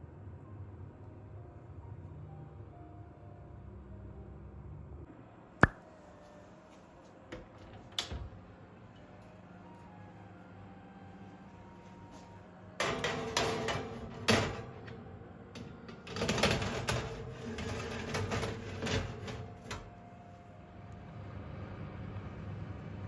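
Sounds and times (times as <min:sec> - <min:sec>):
objects clattering and rustling: 0:15.8 - 0:20.0.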